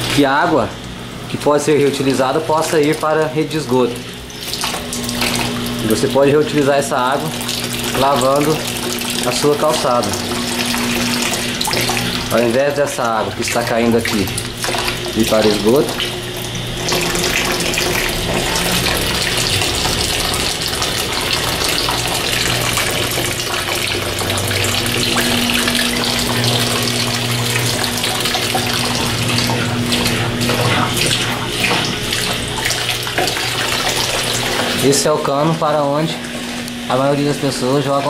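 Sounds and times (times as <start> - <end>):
drain water gushing: 0.0 - 38.0
low steady hum: 0.0 - 38.0.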